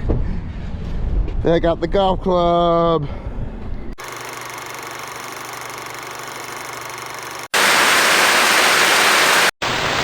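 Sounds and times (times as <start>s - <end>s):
loud white noise hiss: 7.6s - 10.0s
static hiss: 7.6s - 10.0s.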